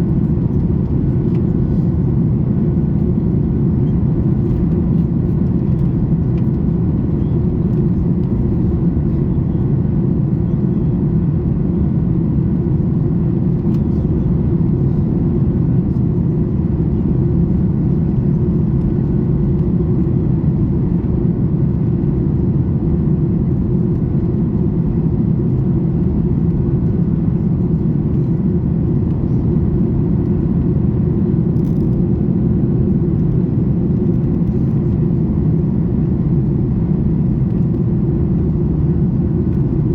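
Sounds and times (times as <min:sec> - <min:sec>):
jet engines droning: 0:00.0 - 0:39.9.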